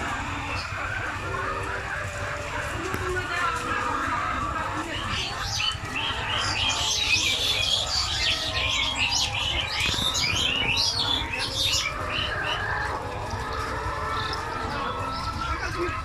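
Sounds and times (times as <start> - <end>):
chickens chirping and squawking: 0.0 - 16.0.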